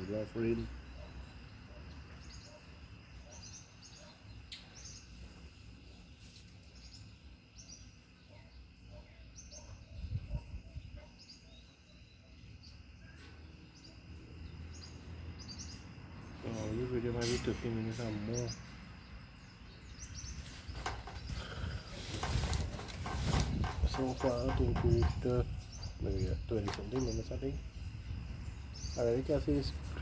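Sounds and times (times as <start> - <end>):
wind rumbling on microphone: 9.8 - 11.0, 20.2 - 30.0.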